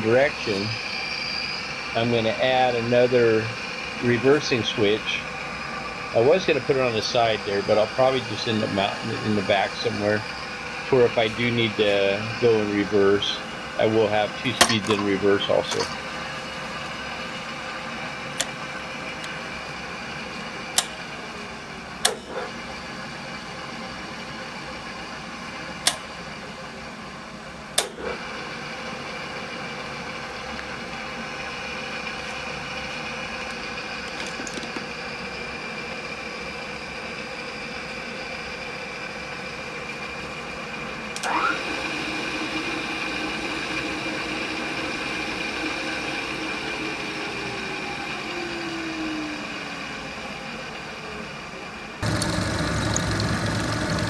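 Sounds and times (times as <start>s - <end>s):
electric motor running: 0.0s - 26.6s, 27.7s - 51.1s, 52.0s - 54.0s
sharp clicks: 22.0s - 22.4s, 25.9s - 26.1s, 27.8s - 28.1s.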